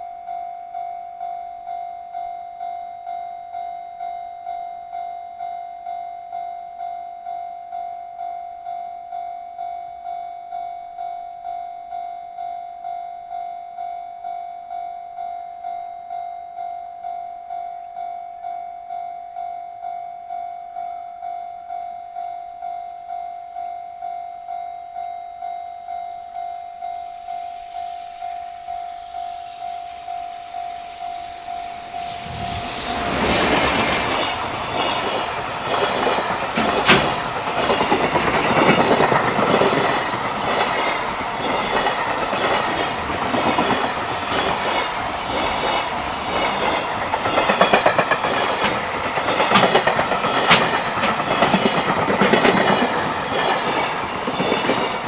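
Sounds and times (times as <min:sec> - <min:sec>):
level crossing warning bell: 0:00.0 - 0:32.7, 0:34.1 - 0:55.0
train wheels clattering: 0:32.0 - 0:55.0.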